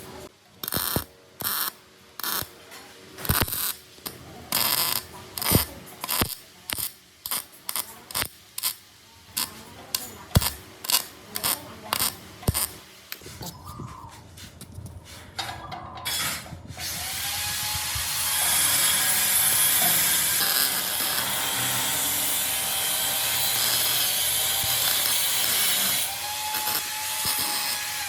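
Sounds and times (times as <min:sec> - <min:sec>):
hand tool rasping strokes: 0:10.3 - 0:13.5, 0:16.1 - 0:28.0.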